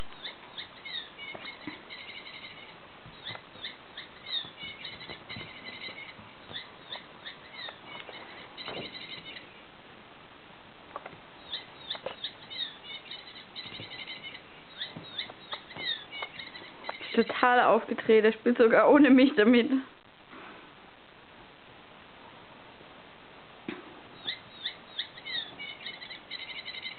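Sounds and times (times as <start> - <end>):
light knocks and pattering: 3.0 - 9.3.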